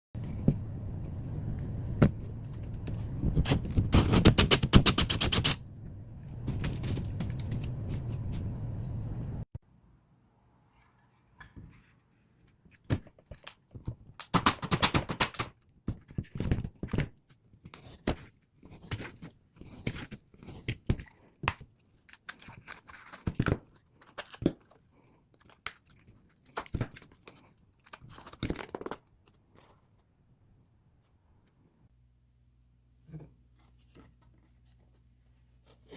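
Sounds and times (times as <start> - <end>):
drywall tearing cutting and scraping: 3.3 - 5.6.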